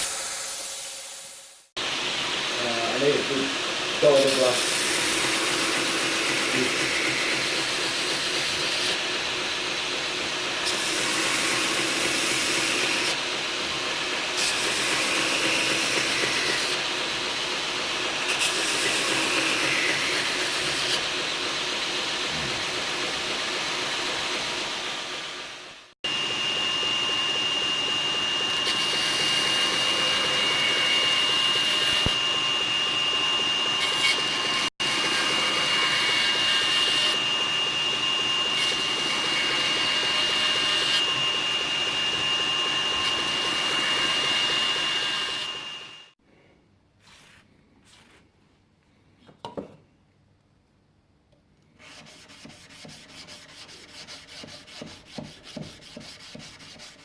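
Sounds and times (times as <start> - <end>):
power sander whining: 26.1 - 46.1
hand sanding rubbing strokes: 47.0 - 48.2, 51.8 - 57.0.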